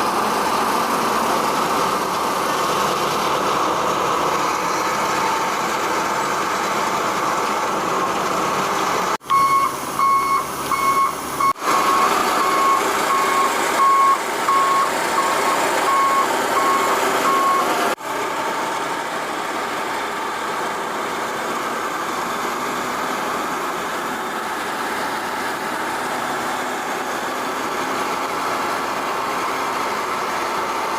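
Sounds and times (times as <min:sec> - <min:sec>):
heavy construction machine running: 0:00.0 - 0:30.9
reversing alarm beeping: 0:09.3 - 0:17.7.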